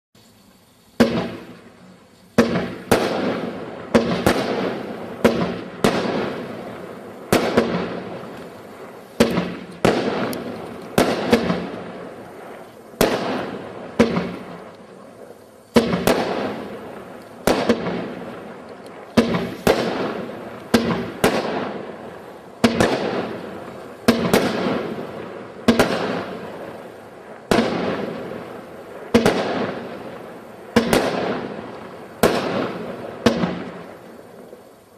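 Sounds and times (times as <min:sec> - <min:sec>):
fireworks banging: 0:00.2 - 0:34.9
fireworks crackling: 0:00.2 - 0:34.9.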